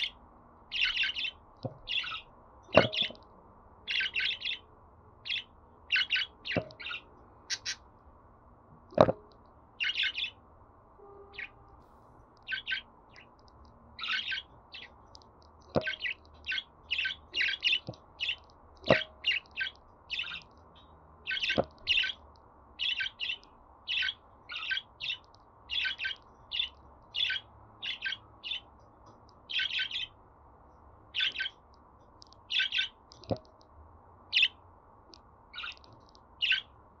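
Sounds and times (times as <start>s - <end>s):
budgerigars chirping: 0.0s - 3.2s, 3.9s - 4.6s, 5.2s - 7.8s, 9.8s - 10.4s, 11.3s - 11.6s, 12.4s - 13.4s, 14.0s - 15.0s, 15.7s - 22.2s, 22.8s - 28.7s, 29.4s - 30.2s, 31.1s - 31.6s, 32.5s - 33.0s, 34.3s - 34.6s, 35.5s - 36.7s.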